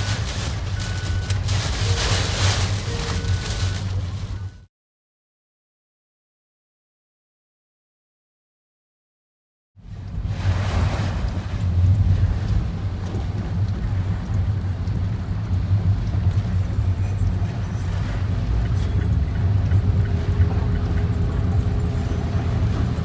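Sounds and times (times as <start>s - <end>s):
typhoon wind raging: 0.0s - 4.5s.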